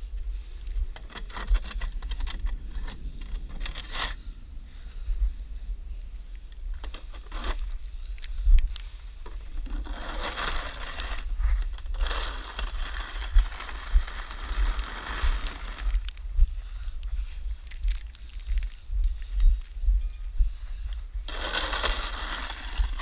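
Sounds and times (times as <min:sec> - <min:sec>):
wind buffeting microphone: 0:00.0 - 0:23.0
snow shovel scraping snow: 0:07.2 - 0:07.6, 0:09.6 - 0:11.2, 0:11.8 - 0:15.8, 0:21.3 - 0:23.0.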